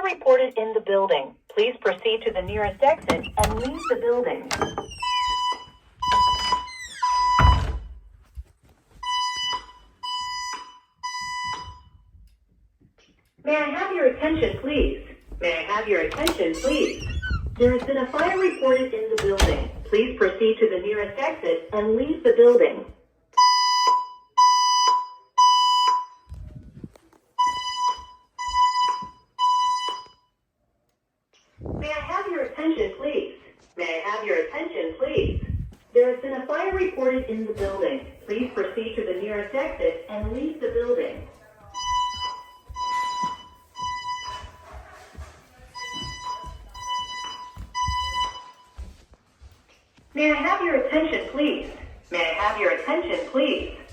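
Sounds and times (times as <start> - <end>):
spoken announcements: 0.0 - 5.0, 13.4 - 22.9, 31.8 - 47.4, 50.1 - 53.9
fire alarm tone: 4.5 - 7.9, 9.0 - 12.0, 27.4 - 30.3, 41.7 - 44.6, 45.7 - 48.8.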